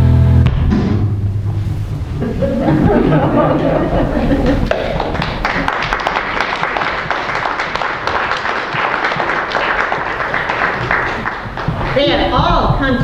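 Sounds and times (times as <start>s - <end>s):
audience clapping: 2.4s - 12.4s.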